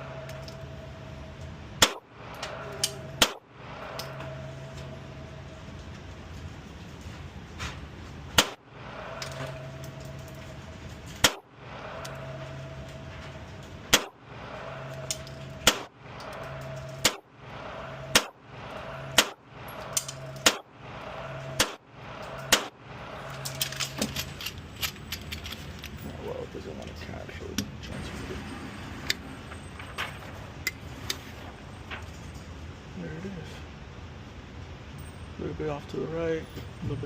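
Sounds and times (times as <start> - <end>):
pistol shots: 1.8 - 2.1, 3.2 - 3.4, 8.4 - 8.6, 11.2 - 11.4, 13.9 - 14.2, 15.6 - 15.9, 17.0 - 17.2, 18.1 - 18.4, 19.1 - 19.4, 20.4 - 20.7, 21.6 - 21.8, 22.5 - 22.8.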